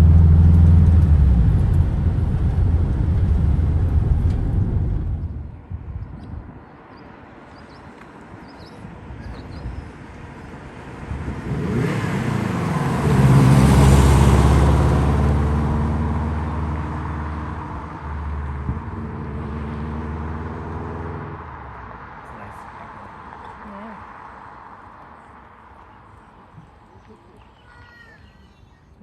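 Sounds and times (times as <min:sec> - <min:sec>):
car engine accelerating: 0:00.0 - 0:05.6, 0:10.9 - 0:27.2.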